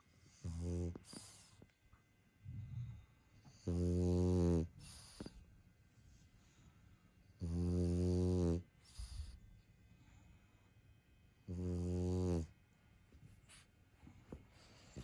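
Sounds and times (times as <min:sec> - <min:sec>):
dog snoring: 0:00.2 - 0:01.7, 0:02.4 - 0:05.5, 0:07.3 - 0:09.4, 0:11.4 - 0:12.6, 0:14.6 - 0:15.0.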